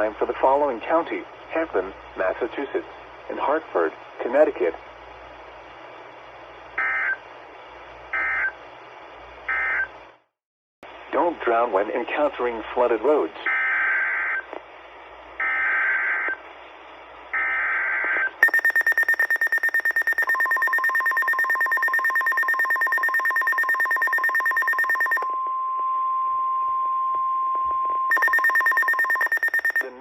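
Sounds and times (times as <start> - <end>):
fast high beeping alarm: 18.4 - 25.2, 28.1 - 30.0
screeching digital data bursts: 18.4 - 25.2, 28.1 - 30.0
steady warning tone: 18.4 - 25.3, 28.1 - 30.0.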